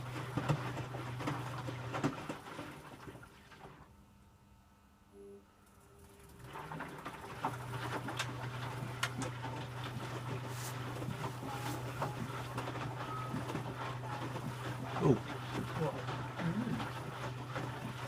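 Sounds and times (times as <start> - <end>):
washing machine motor humming: 0.0 - 4.1, 5.0 - 18.0
water splashing: 6.2 - 18.0.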